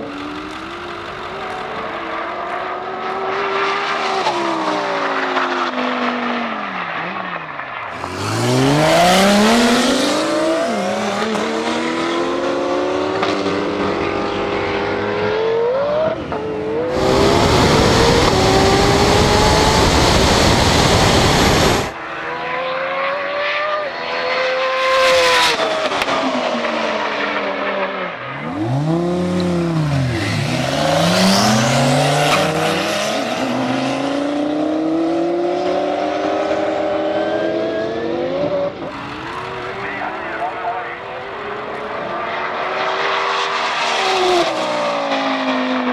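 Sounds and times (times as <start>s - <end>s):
race cars at full throttle: 0.0s - 45.9s
loud rushing noise: 5.9s - 10.8s, 16.8s - 22.0s.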